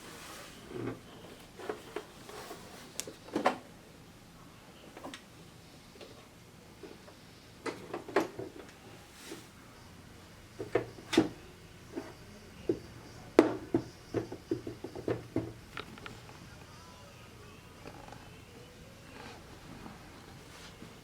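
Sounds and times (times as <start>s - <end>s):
plastic parts knocking and clicking: 10.6s - 11.4s, 12.0s - 16.2s.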